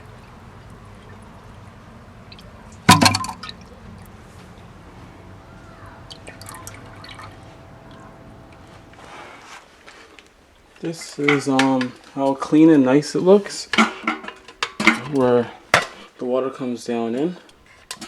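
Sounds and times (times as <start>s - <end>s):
water trickling in toilet: 0.0s - 9.2s
hard objects clattering: 2.8s - 9.3s, 13.8s - 16.1s.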